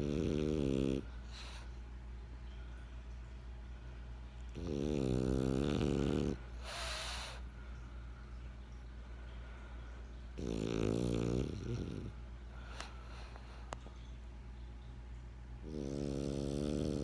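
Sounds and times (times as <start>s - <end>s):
dog snoring: 0.0s - 1.6s, 4.5s - 7.4s, 10.4s - 12.2s, 15.6s - 17.0s
dog breathy puff: 6.6s - 7.4s.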